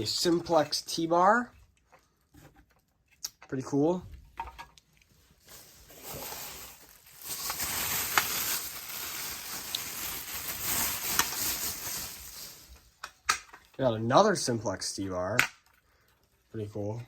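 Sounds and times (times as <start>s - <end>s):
plastic bag rustling: 5.1s - 13.0s.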